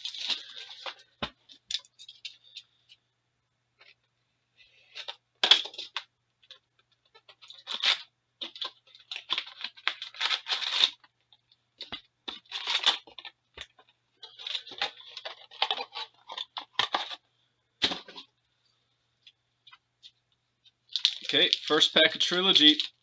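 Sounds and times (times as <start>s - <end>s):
plastic packaging crinkling: 0.0s - 2.6s, 4.9s - 17.2s, 20.9s - 23.0s.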